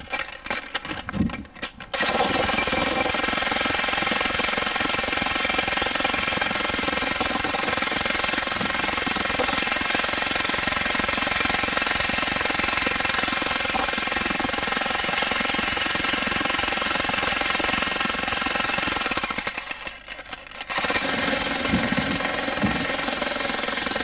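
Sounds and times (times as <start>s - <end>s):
jackhammer breaking rock: 0.0s - 24.0s.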